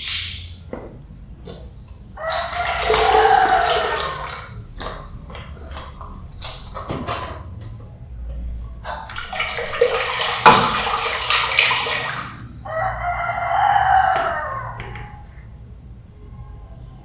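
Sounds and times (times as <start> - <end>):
rooster crowing: 2.1 - 4.6, 9.4 - 16.0
loud rushing splashing noise: 2.2 - 4.6, 9.0 - 12.6.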